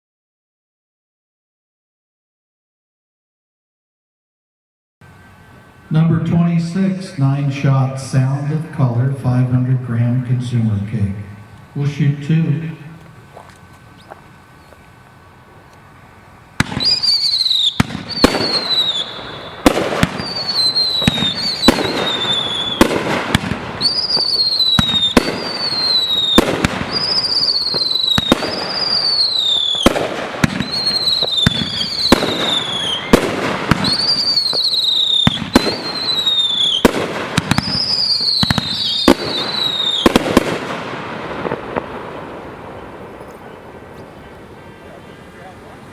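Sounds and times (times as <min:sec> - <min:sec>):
firework bangs: 0:15.8 - 0:45.9
falling firework whistle: 0:16.6 - 0:45.4.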